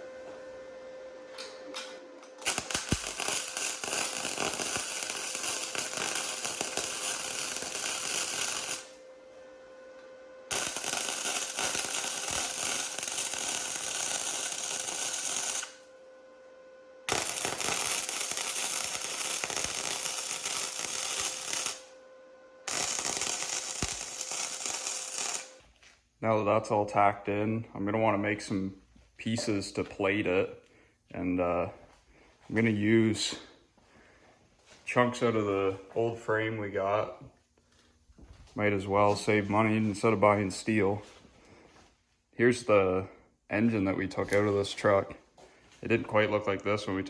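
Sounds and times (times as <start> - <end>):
welder arc crackling: 2.3 - 9.0, 10.5 - 15.9, 17.1 - 21.9, 22.6 - 25.6.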